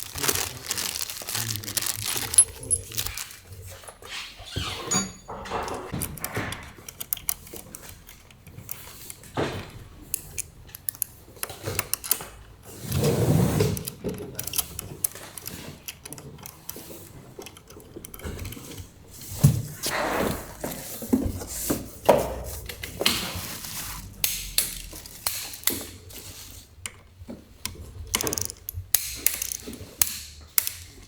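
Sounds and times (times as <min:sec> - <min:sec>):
mechanical clicking and rattling: 0:00.0 - 0:03.4, 0:05.4 - 0:19.4, 0:26.8 - 0:31.0.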